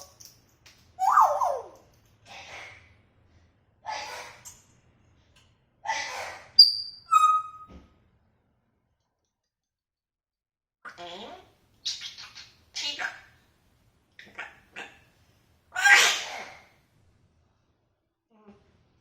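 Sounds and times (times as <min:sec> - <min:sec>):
parrot whistling and calling: 0:01.0 - 0:01.8, 0:06.0 - 0:07.7.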